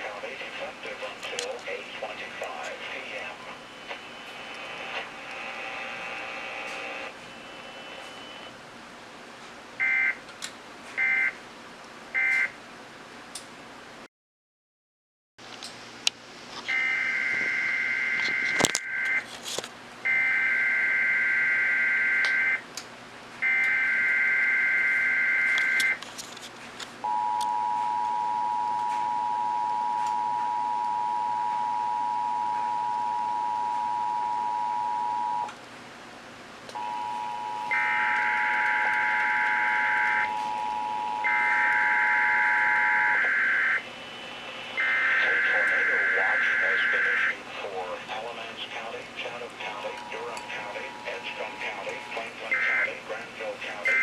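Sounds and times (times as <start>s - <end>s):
two-tone attention signal: 27.1s - 35.5s, 36.8s - 43.5s.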